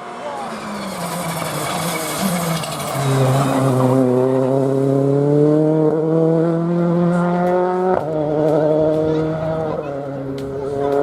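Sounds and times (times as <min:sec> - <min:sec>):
car engine accelerating hard: 0:00.0 - 0:11.0.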